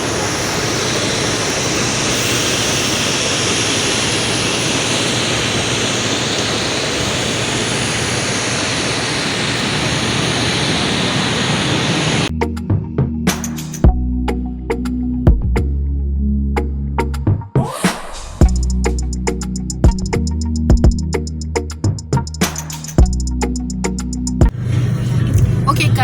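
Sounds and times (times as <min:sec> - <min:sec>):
jet airliner roar: 0:00.0 - 0:12.3.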